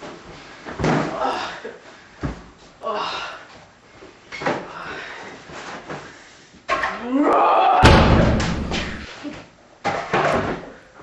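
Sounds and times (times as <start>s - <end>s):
loud crash with rumble: 7.8s - 9.1s
thud: 7.8s - 9.1s.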